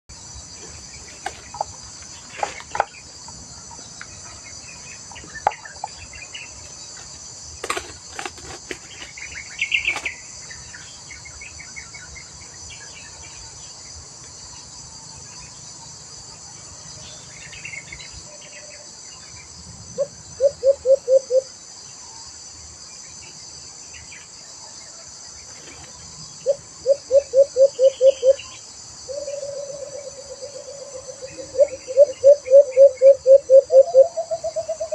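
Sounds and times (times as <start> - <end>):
high insect chorus: 0.1 - 34.9
dove hooting: 20.0 - 21.5, 26.4 - 34.9.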